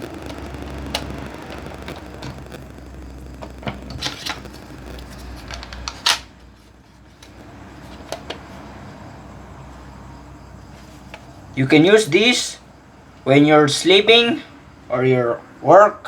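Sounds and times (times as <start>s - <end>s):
steady background hum: 0.0s - 16.0s
small clicks from handling objects: 4.0s - 6.2s.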